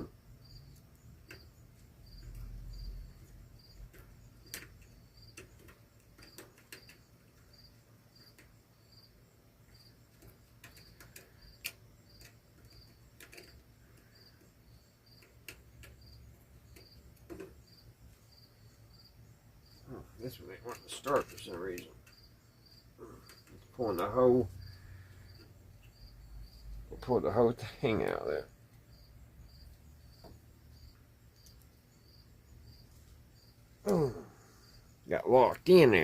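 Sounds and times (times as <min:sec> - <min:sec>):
cricket chirping: 0:00.0 - 0:36.0
small parts and screwdriver tapping: 0:00.7 - 0:08.6, 0:09.6 - 0:17.8, 0:20.6 - 0:26.2, 0:29.6 - 0:31.7.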